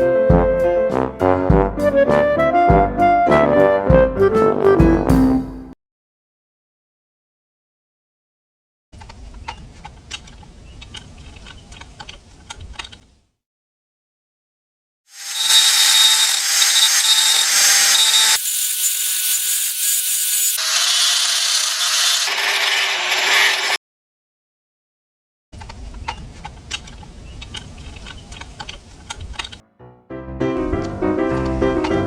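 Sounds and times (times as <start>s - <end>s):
angle grinder whine: 15.1s - 23.8s.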